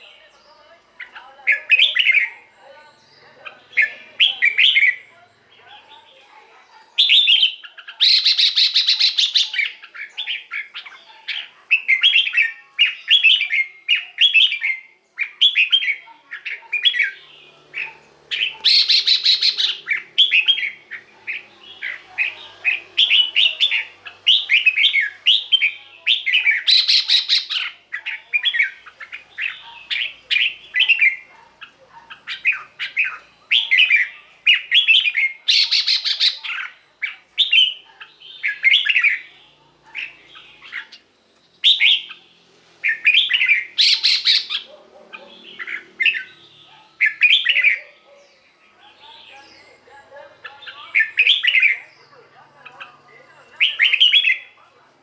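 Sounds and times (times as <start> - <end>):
bird singing whistled phrases: 18.4 - 20.8, 21.8 - 28.8, 32.3 - 36.8, 41.6 - 42.2, 42.8 - 44.7.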